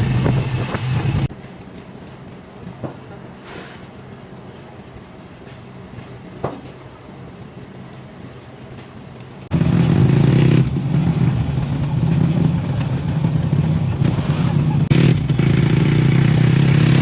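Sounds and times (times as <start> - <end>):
loud motor hum: 0.0 - 1.3, 9.5 - 17.0.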